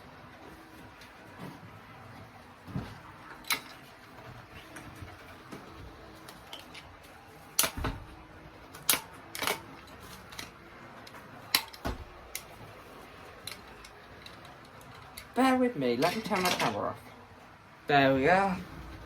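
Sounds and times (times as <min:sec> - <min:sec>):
sharp clicks and knocks: 0:07.6 - 0:08.1.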